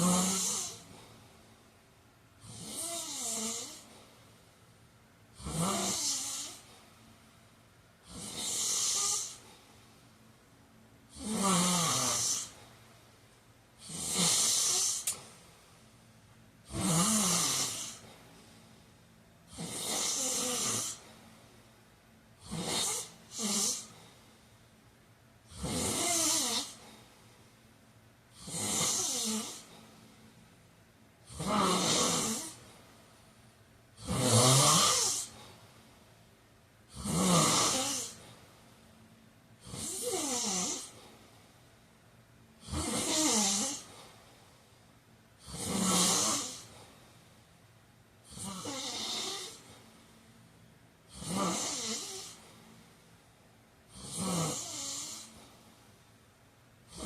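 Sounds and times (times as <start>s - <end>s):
man snoring: 0.0s - 1.0s, 2.4s - 3.9s, 5.4s - 6.7s, 8.0s - 9.4s, 11.1s - 12.6s, 13.8s - 15.2s, 16.6s - 18.1s, 19.5s - 21.1s, 22.4s - 24.0s, 25.5s - 27.0s, 28.3s - 29.7s, 31.3s - 32.6s, 34.0s - 35.4s, 36.9s - 38.2s, 39.6s - 41.0s, 42.6s - 44.0s, 45.4s - 46.8s, 48.2s - 49.7s, 51.1s - 52.4s, 53.9s - 55.5s.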